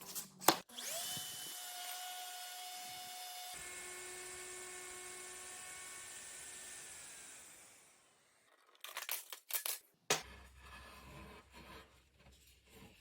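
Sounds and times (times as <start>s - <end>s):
router motor spinning down: 0.7s - 8.0s.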